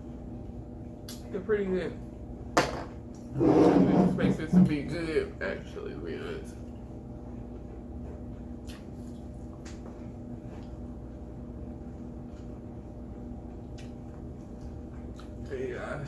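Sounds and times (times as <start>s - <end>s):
steady low hum: 0.0s - 16.0s
soft mouth clicks: 8.6s - 9.8s.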